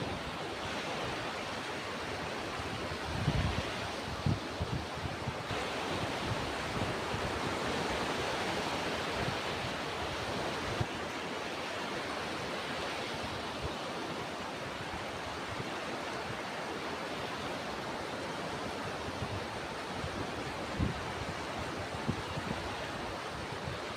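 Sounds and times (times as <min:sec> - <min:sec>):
ocean surf washing in: 0:00.0 - 0:23.9
wind buffeting microphone: 0:02.8 - 0:07.5.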